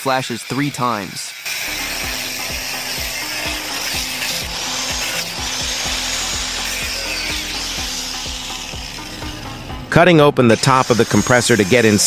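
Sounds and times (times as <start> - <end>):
tool cutting through steel: 0.0 - 12.0
background music with beat: 1.6 - 11.0.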